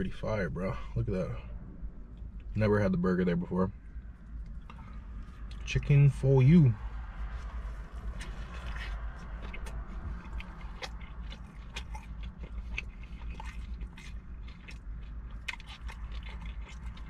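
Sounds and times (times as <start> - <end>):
chewing burger: 3.9 - 6.0, 6.9 - 17.0.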